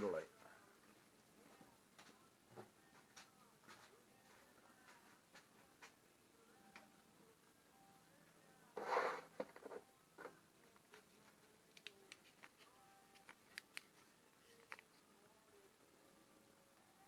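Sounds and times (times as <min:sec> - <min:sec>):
rustling scrape: 0:08.8 - 0:09.8
light clicks and taps of objects: 0:10.2 - 0:15.0.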